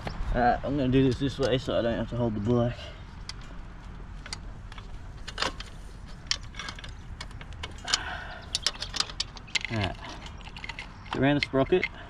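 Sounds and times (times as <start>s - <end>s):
roller chain clinking and rattling: 4.2s - 12.0s.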